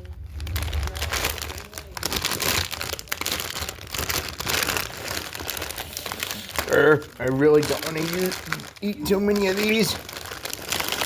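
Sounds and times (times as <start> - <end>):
snack bag crackling: 0.0 - 11.0.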